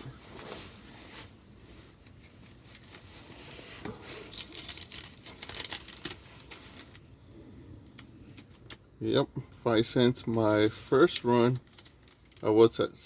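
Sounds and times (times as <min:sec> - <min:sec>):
paper receipt rustling: 0:00.3 - 0:07.1, 0:10.2 - 0:13.0.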